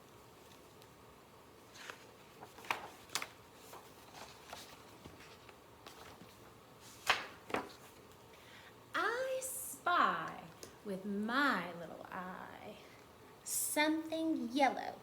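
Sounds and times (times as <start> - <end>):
book pages rustling: 0.3 - 1.0, 1.6 - 8.3.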